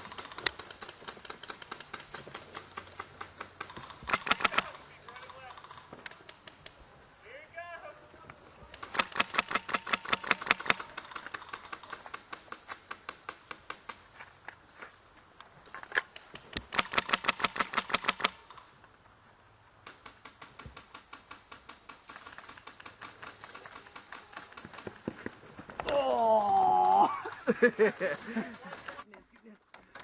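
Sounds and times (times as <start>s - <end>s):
airsoft guns firing bursts: 0.0s - 5.8s, 8.8s - 13.4s, 16.7s - 18.6s
distant gunfire: 3.3s - 4.8s, 8.8s - 12.4s, 16.7s - 18.6s.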